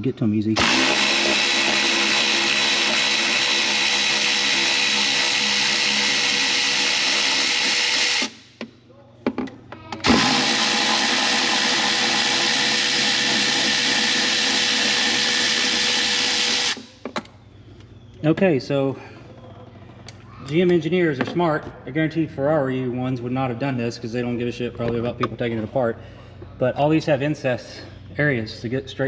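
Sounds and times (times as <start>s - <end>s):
power tool whirring: 0.6s - 8.7s, 10.0s - 17.0s.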